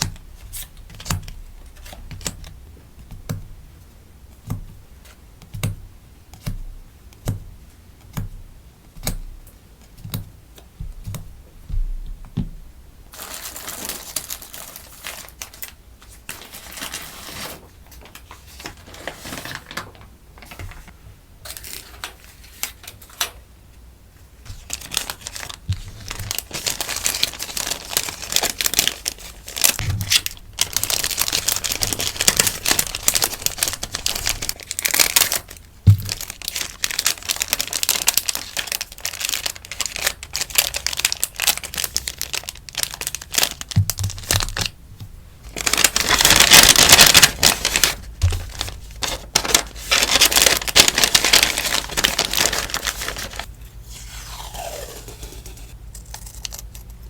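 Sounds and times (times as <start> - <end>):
packaging rustling and crinkling: 13.1 - 23.3, 24.5 - 44.8, 45.4 - 53.5.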